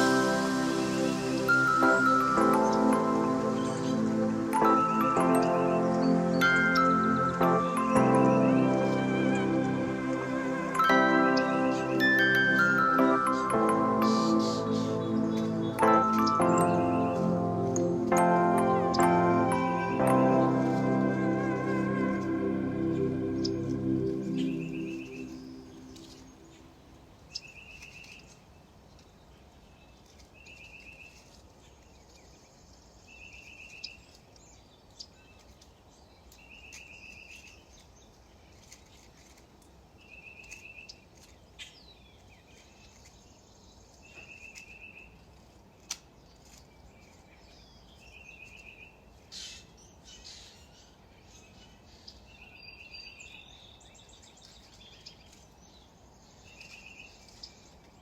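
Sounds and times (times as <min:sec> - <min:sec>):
short trilled chirps: 0:00.0 - 0:26.5
low steady hiss: 0:00.0 - 0:58.0.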